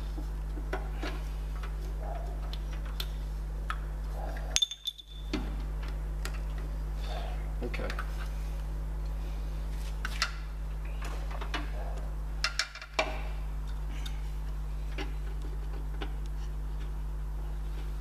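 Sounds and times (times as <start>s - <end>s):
steady low hum: 0.0s - 18.0s
clicks and taps of parts: 12.4s - 13.8s.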